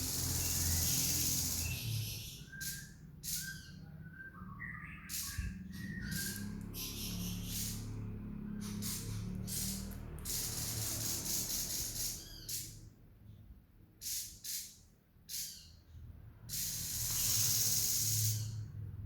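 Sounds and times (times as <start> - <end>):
bird rattling chatter: 0.0 - 1.8, 8.6 - 12.6.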